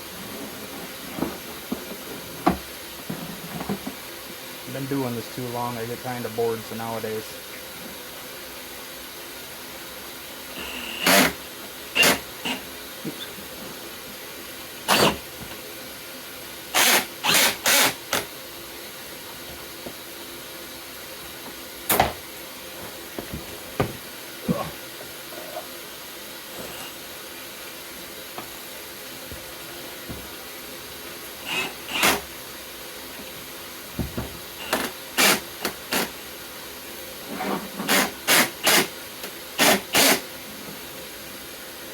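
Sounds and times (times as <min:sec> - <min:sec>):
steady background hiss: 0:00.0 - 0:41.9.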